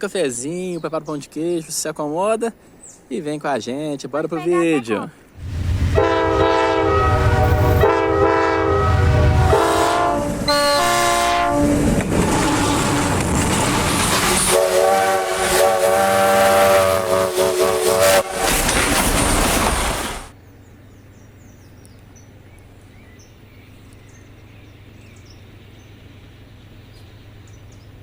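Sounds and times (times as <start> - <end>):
locomotive air horn blasts: 5.4 - 12.7, 14.2 - 20.2
deep engine rumble: 5.4 - 20.3
train rolling noise: 5.4 - 20.4.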